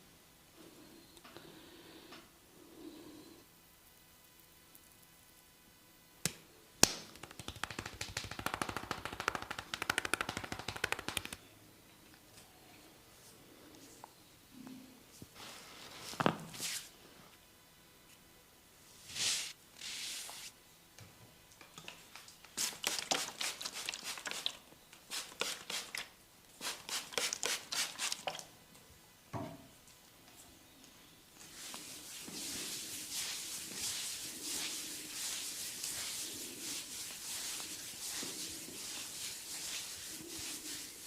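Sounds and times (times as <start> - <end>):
hands tapping and slapping: 6.2 - 11.5
palms rubbing over hair: 7.1 - 11.5, 31.4 - 41.0.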